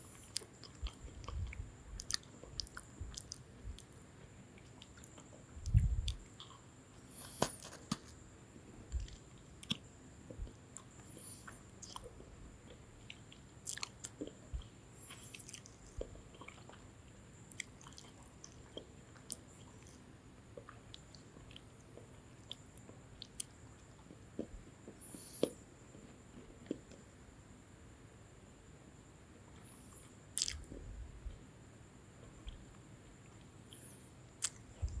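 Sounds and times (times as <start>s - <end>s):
chewing crunchy biscuit: 0.0s - 8.3s, 8.9s - 27.2s, 29.5s - 31.5s, 32.2s - 35.0s.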